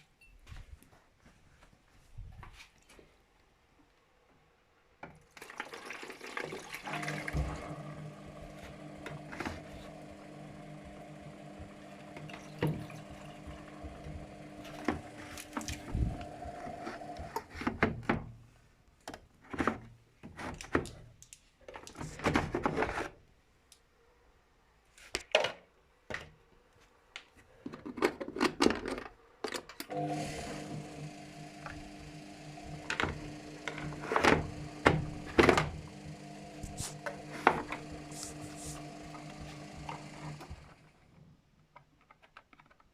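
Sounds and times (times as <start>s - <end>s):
washing machine motor humming: 6.6s - 17.5s, 29.9s - 41.0s.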